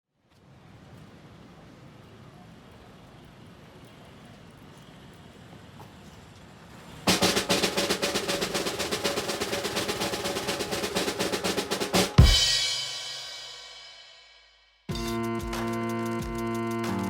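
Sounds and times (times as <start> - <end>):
heavy drum hit: 7.1 - 14.2
snare drum roll: 7.1 - 14.2
cymbal crash ringing: 7.1 - 14.6.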